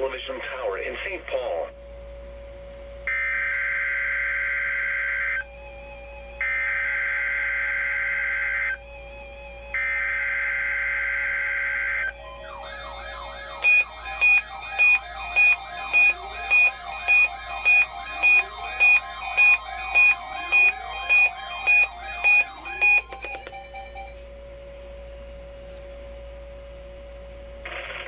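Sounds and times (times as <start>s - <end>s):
steady warning tone: 0.0s - 28.0s
low hum: 4.0s - 28.0s
two-tone alert beeps: 12.2s - 24.2s.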